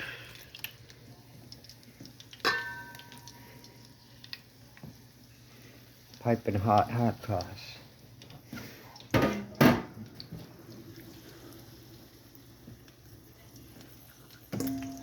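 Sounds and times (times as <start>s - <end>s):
kitchen utensils clattering: 2.5s - 3.1s, 9.2s - 9.9s.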